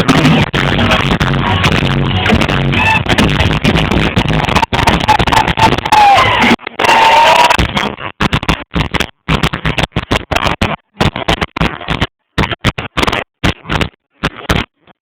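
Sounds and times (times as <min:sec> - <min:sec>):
rumbling microphone noise: 0:00.0 - 0:07.8
distorted live concert music: 0:00.0 - 0:14.8.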